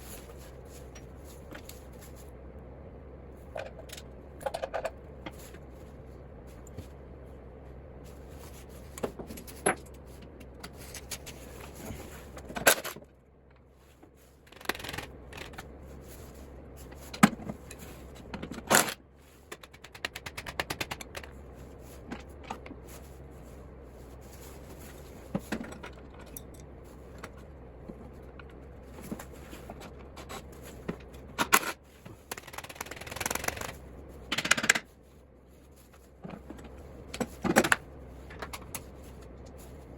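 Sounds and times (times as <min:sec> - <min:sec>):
steady low hum: 0:00.0 - 0:39.9
rapid clicking: 0:32.3 - 0:33.8.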